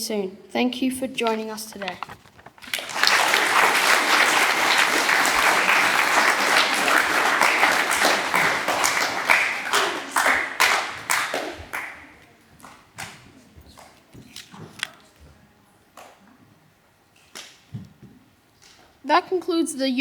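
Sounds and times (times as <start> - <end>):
audience clapping: 1.8 - 13.2.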